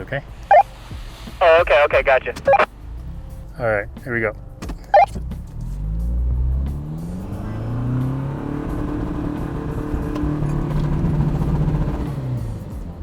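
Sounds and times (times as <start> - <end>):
pickup truck engine revving: 5.7 - 12.6.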